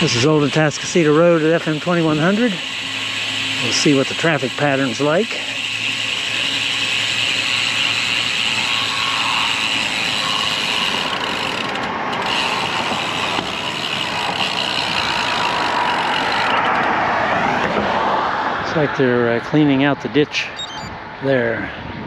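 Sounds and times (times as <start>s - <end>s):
road traffic with trucks: 0.0s - 22.0s.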